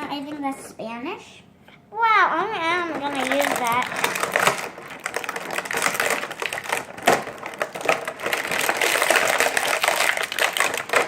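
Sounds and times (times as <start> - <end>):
plastic packaging crinkling: 2.8 - 11.0.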